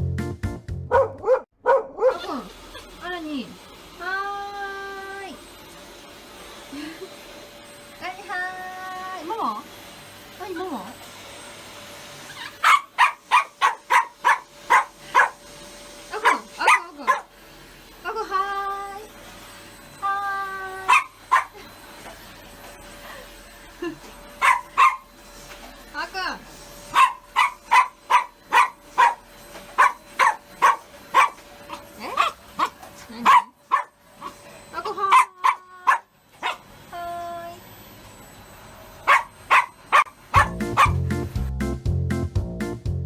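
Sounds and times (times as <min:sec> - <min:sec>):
small dog barking sharply: 0:00.9 - 0:02.2, 0:12.6 - 0:15.4, 0:27.0 - 0:29.2, 0:33.3 - 0:33.9, 0:39.1 - 0:41.0
dog whining: 0:12.2 - 0:15.4.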